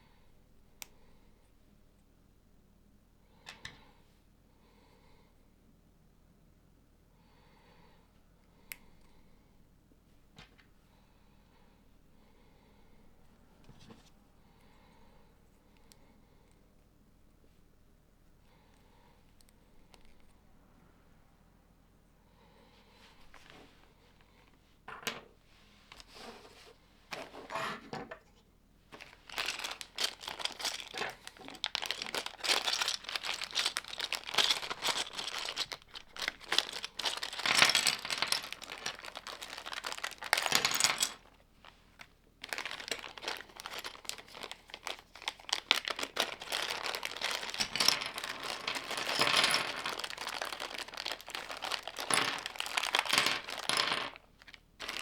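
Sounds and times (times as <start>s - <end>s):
plastic bags crinkling: 28.9s - 55.0s.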